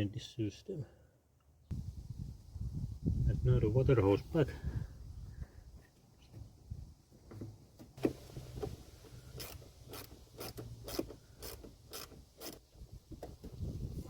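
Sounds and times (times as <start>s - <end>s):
hose clamp scraping clicks: 9.4s - 12.6s.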